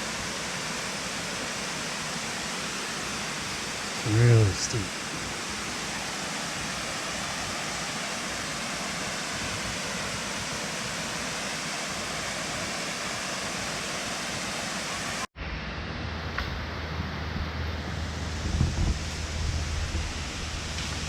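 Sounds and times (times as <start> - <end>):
small waterfall rushing: 0.0 - 15.3, 18.2 - 21.0
dull low rumbling noise: 15.4 - 21.0.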